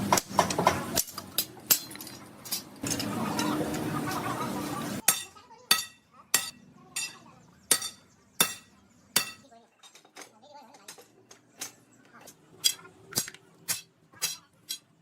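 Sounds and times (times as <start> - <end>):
steady background noise: 0.0 - 15.0
hammer clanging on steel: 5.0 - 9.5.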